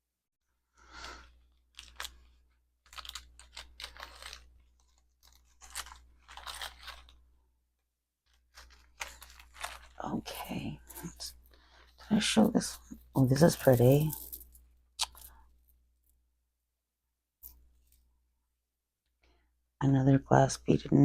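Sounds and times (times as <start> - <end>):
plastic bag crinkling: 0.9 - 7.2, 8.3 - 15.6.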